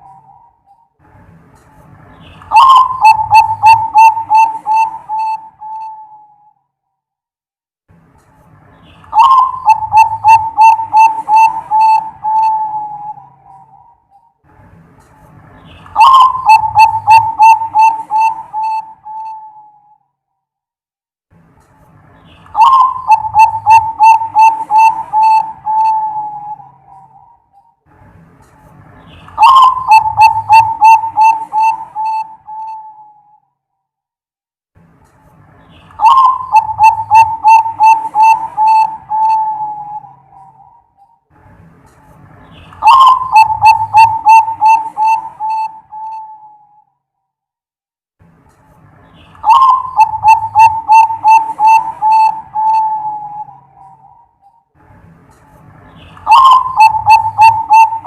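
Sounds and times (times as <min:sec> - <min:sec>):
dove cooing: 0:02.5 - 0:06.5, 0:09.1 - 0:14.0, 0:16.0 - 0:19.9, 0:22.6 - 0:27.4, 0:29.4 - 0:33.3, 0:36.0 - 0:40.8, 0:42.8 - 0:46.8, 0:49.4 - 0:54.2, 0:56.2 - 0:58.0.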